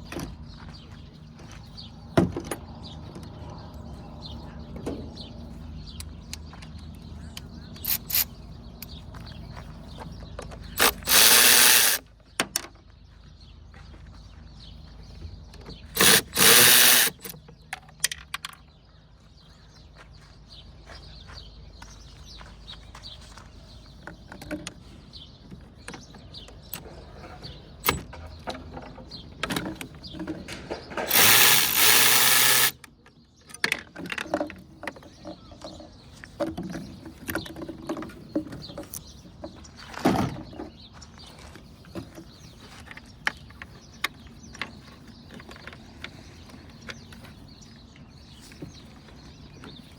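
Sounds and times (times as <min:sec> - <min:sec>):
tools clicking and clattering: 0:06.0 - 0:09.0, 0:10.3 - 0:12.8, 0:15.6 - 0:18.7, 0:25.6 - 0:39.1
loud hiss bursts: 0:10.8 - 0:12.0, 0:31.1 - 0:32.8.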